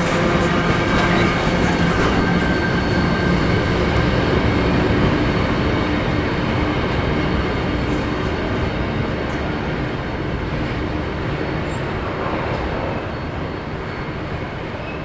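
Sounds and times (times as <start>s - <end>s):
train wheels rumbling on rail: 0.0s - 15.0s.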